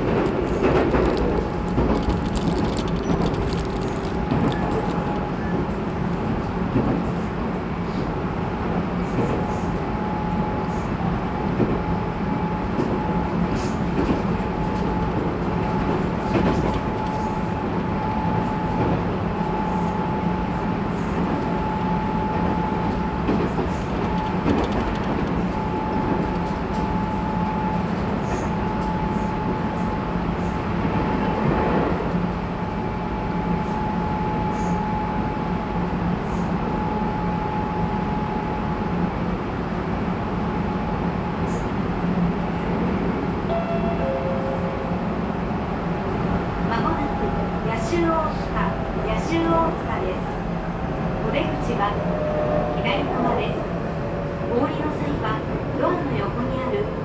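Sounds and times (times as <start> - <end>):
train wheels rumbling on rails: 0.0 - 32.8.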